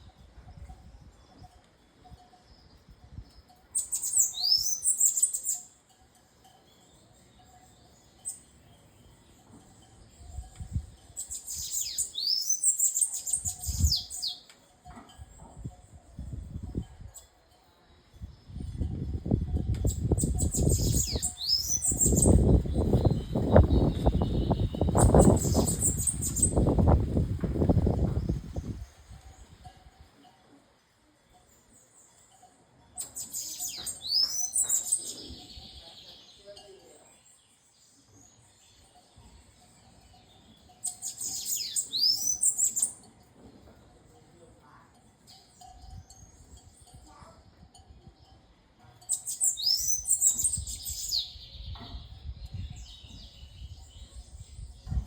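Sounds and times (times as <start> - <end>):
high thin bird chirps: 3.8 - 5.7, 10.2 - 14.5, 19.8 - 27.0, 33.0 - 36.4, 40.8 - 43.0, 49.1 - 55.0.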